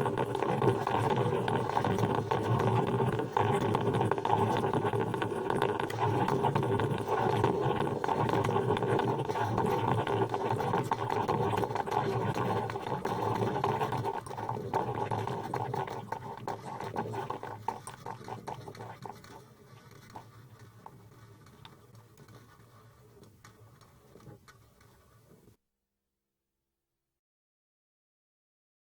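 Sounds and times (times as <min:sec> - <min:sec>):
coffee machine churning: 0:00.0 - 0:24.4.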